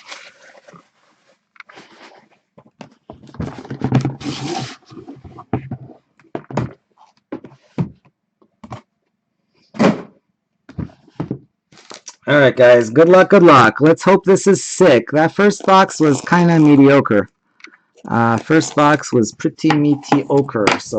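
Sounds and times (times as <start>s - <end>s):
rustling: 0.0s - 6.1s
knocks and thunks on a table: 5.5s - 8.8s, 9.8s - 11.5s.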